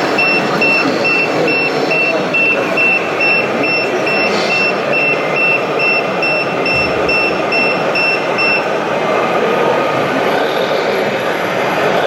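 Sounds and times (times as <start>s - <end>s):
reversing beeper: 0.0s - 8.7s.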